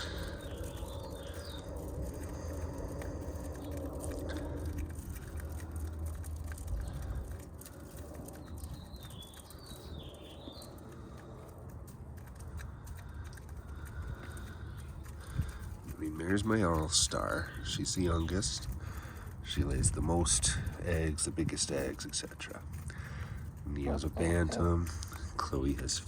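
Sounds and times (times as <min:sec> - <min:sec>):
chickens pecking: 0:00.0 - 0:26.0.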